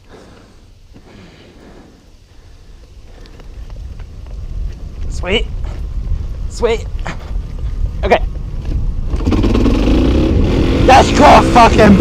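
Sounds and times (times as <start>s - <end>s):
wind buffeting microphone: 2.2s - 10.9s
faint clicks: 2.8s - 4.8s.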